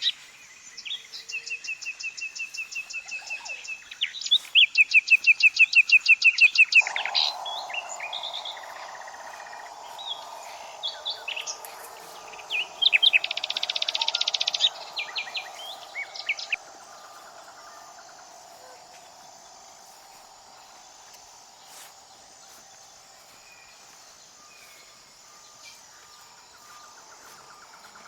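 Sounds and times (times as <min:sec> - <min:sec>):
faint insect calls: 0:00.0 - 0:28.0
birds chirping quickly: 0:06.7 - 0:20.1.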